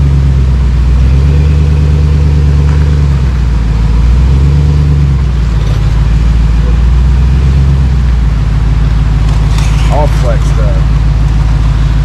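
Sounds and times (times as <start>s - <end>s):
truck engine running at low revs: 0.0s - 12.0s.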